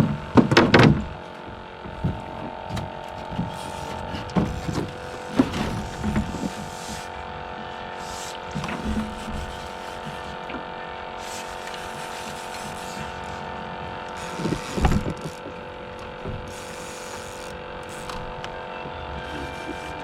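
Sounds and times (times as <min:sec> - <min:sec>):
steady hum: 0:00.0 - 0:20.0
knocks and thumps: 0:00.4 - 0:07.0, 0:14.4 - 0:16.6.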